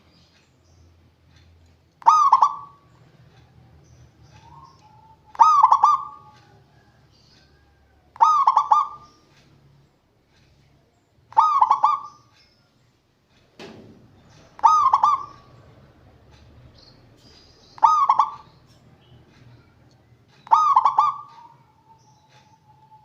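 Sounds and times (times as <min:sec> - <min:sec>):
dove cooing: 0:02.0 - 0:02.9, 0:04.2 - 0:09.3, 0:11.3 - 0:12.3, 0:14.6 - 0:15.6, 0:17.7 - 0:18.7, 0:20.4 - 0:23.0
single knock: 0:13.6 - 0:14.0.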